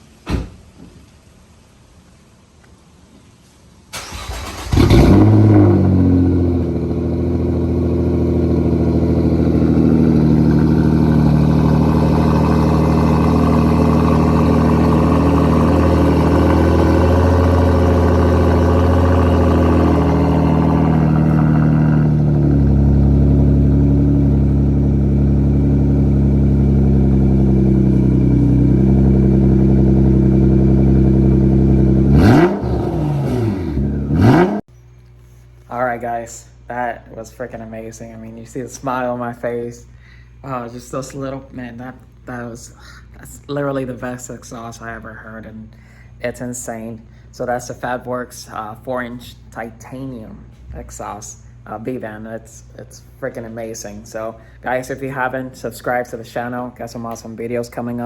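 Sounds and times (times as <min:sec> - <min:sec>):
car engine idling and revving: 0:04.0 - 0:34.7.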